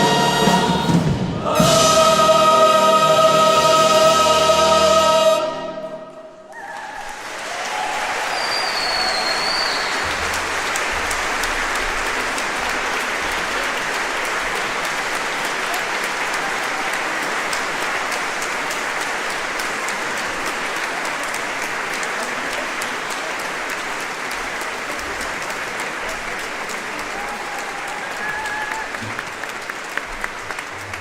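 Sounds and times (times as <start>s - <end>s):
large crowd applauding: 6.5s - 31.0s.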